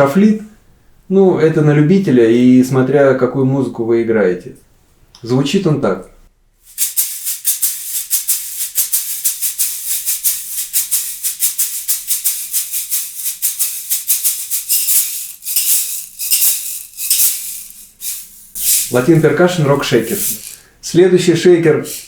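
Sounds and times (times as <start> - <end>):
tube shaker rhythm: 6.6 - 20.9, 21.8 - 22.0.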